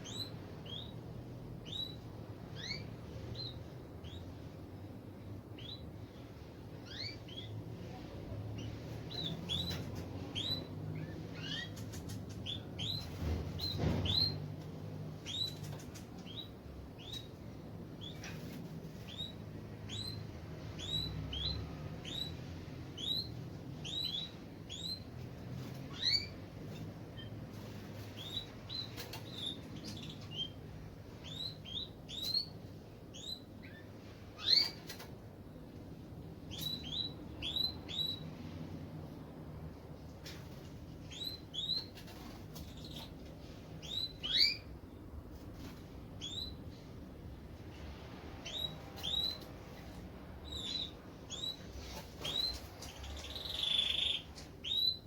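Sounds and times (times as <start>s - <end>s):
canaries chirping: 0.0s - 7.7s, 8.5s - 35.1s, 36.1s - 38.5s, 40.2s - 45.0s, 45.6s - 47.3s, 48.3s - 55.0s
faint clicks: 11.7s - 12.5s.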